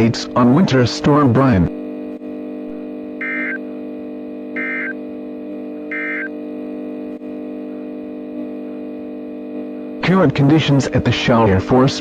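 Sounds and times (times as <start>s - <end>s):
two-tone digital bursts: 2.7s - 3.7s, 4.5s - 5.1s, 5.9s - 6.5s.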